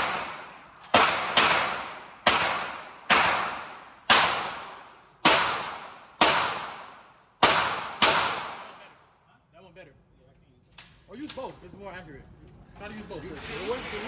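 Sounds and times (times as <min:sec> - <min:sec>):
gunshots: 0:00.0 - 0:08.9.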